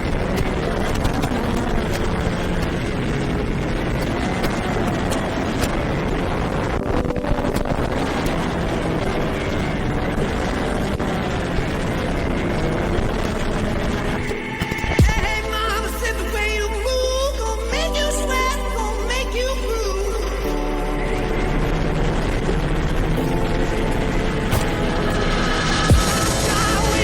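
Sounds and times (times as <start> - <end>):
wind noise: 0.0 - 18.2.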